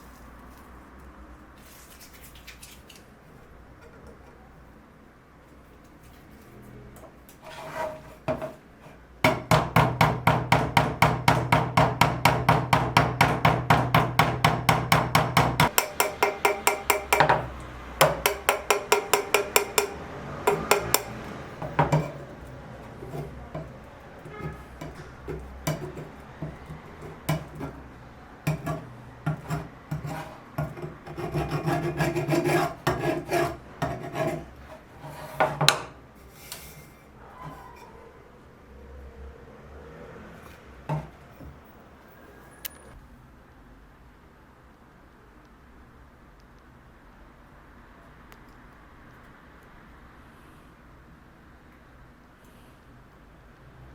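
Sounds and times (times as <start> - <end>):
hand tool scraping wood: 7.4 - 9.5, 14.2 - 27.9, 28.5 - 37.9.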